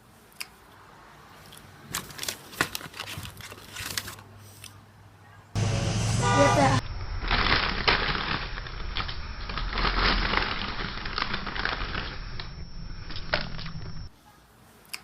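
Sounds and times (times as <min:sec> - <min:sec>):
crunching crumpling noise: 0:01.4 - 0:04.3, 0:06.9 - 0:14.1.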